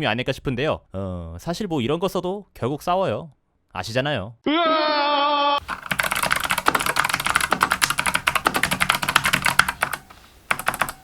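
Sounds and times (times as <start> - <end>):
mechanical keyboard typing: 5.6 - 11.0.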